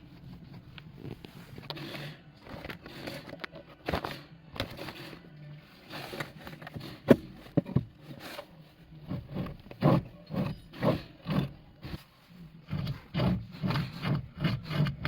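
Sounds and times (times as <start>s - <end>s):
steering clicks knocks and scraping: 0.1s - 12.1s, 12.7s - 15.0s.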